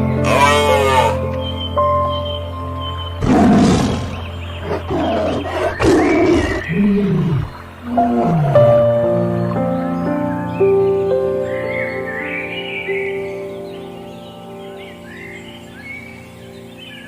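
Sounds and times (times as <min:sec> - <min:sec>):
background music: 0:00.0 - 0:17.0
large wild animal calling: 0:00.2 - 0:01.3, 0:03.2 - 0:09.1.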